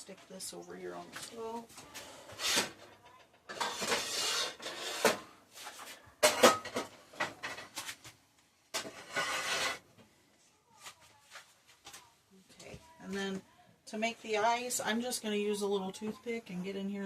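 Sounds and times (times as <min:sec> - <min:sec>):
kitchenware scraping on surface: 0:02.4 - 0:05.3, 0:08.8 - 0:09.8.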